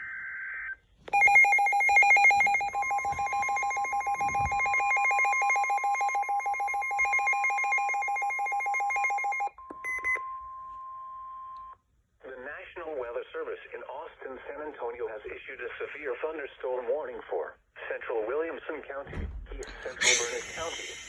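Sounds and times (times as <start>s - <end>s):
steady warning alarm tone: 1.1s - 9.5s
rapid pulsing alarm beeps: 1.2s - 10.0s.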